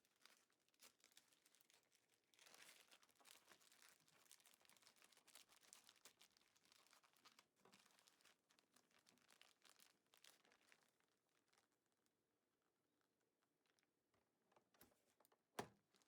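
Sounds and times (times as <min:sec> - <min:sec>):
plastic bag crinkling: 0:02.4 - 0:11.7.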